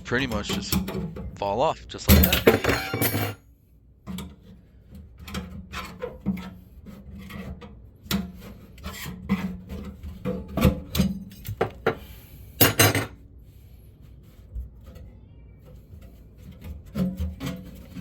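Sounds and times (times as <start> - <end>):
metallic knocks and scraping: 0.0 - 1.4, 2.1 - 3.4, 4.0 - 18.0
metal clatter: 2.1 - 3.4.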